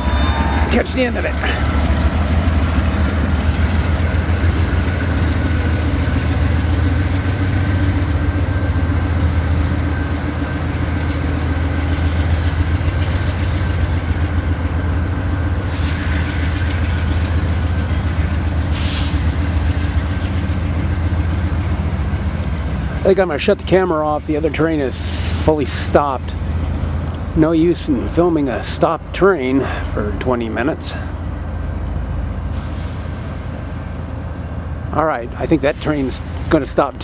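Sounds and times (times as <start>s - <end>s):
faint high squeal: 0.0s - 1.1s
train wheels rumbling on rails: 0.0s - 37.0s
brief hisses: 18.7s - 19.2s.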